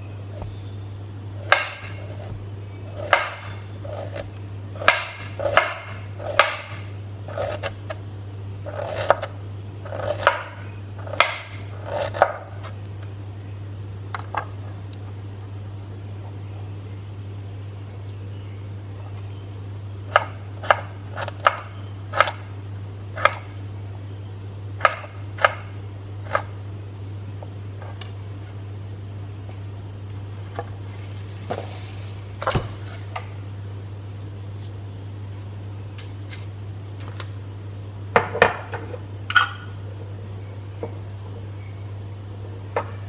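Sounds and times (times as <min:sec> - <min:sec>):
steady low hum: 0:00.0 - 0:43.0
knife chopping on cutting board: 0:01.4 - 0:08.0, 0:08.7 - 0:12.7, 0:20.1 - 0:22.5, 0:23.2 - 0:23.5, 0:24.8 - 0:26.6.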